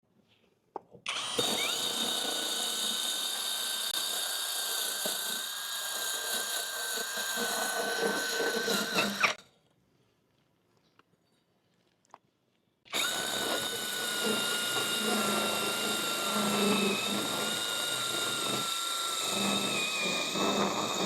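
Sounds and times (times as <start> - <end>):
core drill motor whine: 1.1 - 9.4, 12.9 - 21.0.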